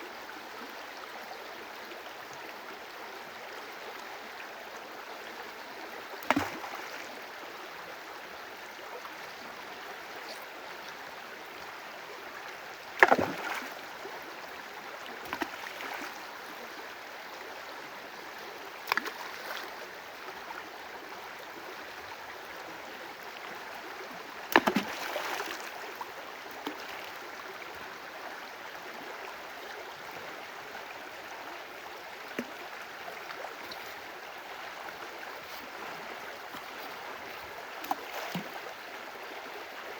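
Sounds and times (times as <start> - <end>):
water splashes: 6.2 - 7.2, 12.9 - 14.1, 15.2 - 16.3, 18.8 - 19.8, 24.0 - 26.0, 35.3 - 38.8
rushing water: 12.2 - 17.0, 21.5 - 28.1.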